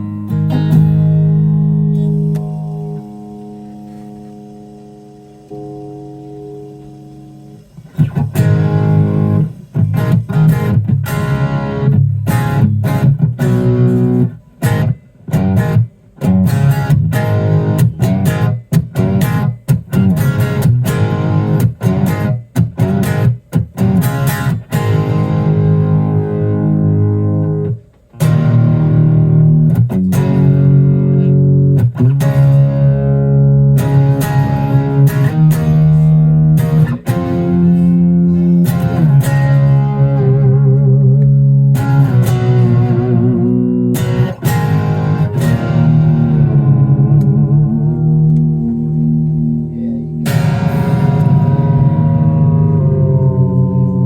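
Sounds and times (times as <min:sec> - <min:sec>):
electric guitar riffs: 0:00.0 - 0:54.0.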